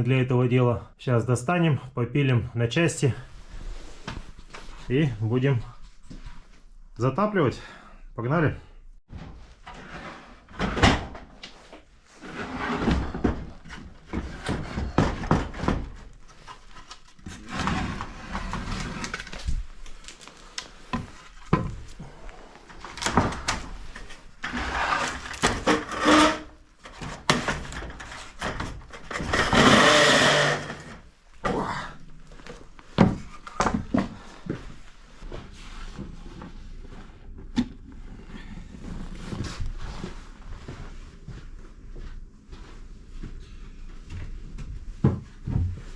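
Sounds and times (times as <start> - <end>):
wood scraping and rustling: 9.1 - 31.1.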